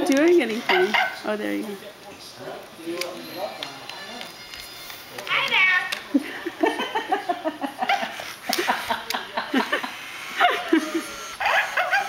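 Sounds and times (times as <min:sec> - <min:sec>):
dog calling: 0:00.5 - 0:01.3, 0:11.4 - 0:12.0
parrot calling: 0:00.6 - 0:01.2.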